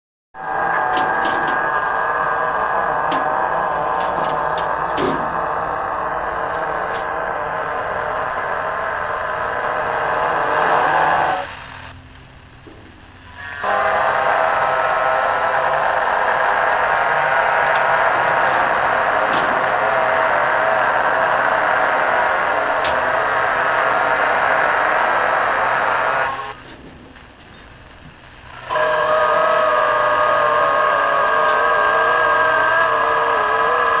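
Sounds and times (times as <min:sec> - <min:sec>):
low hum: 0:00.4 - 0:33.9.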